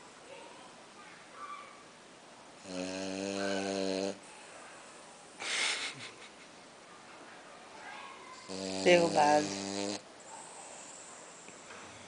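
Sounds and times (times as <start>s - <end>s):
dog snoring: 2.6s - 4.3s, 8.4s - 10.0s.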